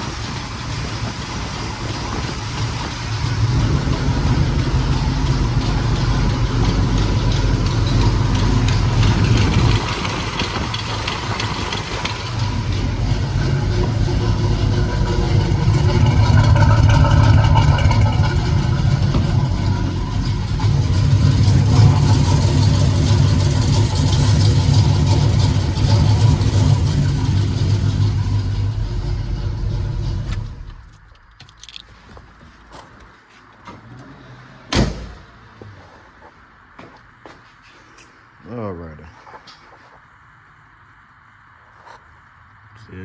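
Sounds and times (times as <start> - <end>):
car engine revving: 0.0 - 31.0.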